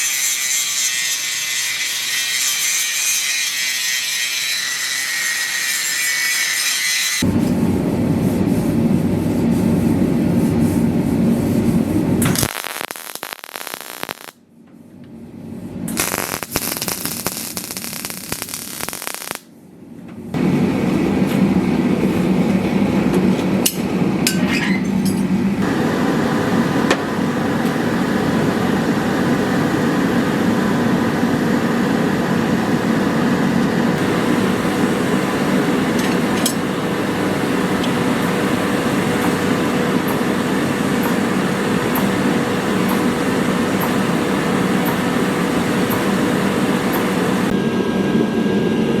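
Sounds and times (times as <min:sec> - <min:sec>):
machine running with low hum: 0:25.6 - 0:49.0.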